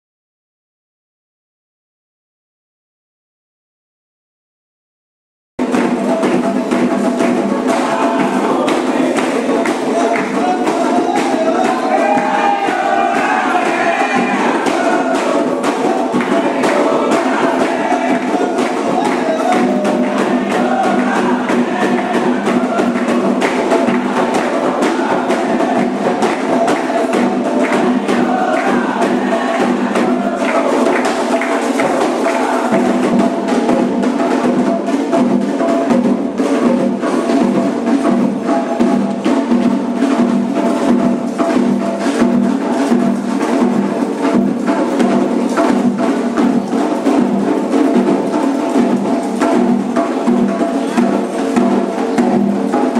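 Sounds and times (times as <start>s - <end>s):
hand drums: 5.6s - 52.9s
voices singing: 5.6s - 52.9s.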